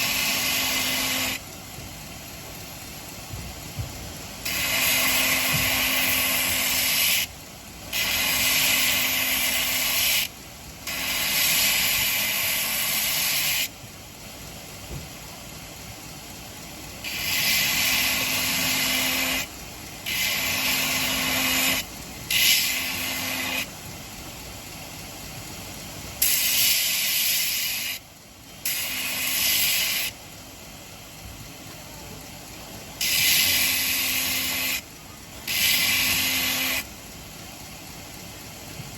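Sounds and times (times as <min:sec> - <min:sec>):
belt grinder grinding steel: 0:00.0 - 0:01.4, 0:04.5 - 0:07.3, 0:07.9 - 0:10.3, 0:10.9 - 0:13.7, 0:17.0 - 0:23.7, 0:28.6 - 0:30.1, 0:33.0 - 0:34.8, 0:35.4 - 0:36.9
belt grinder running: 0:00.0 - 0:01.4, 0:04.4 - 0:07.3, 0:07.9 - 0:10.3, 0:10.9 - 0:13.7, 0:17.0 - 0:23.7, 0:28.6 - 0:30.2, 0:33.0 - 0:34.8, 0:35.4 - 0:36.9.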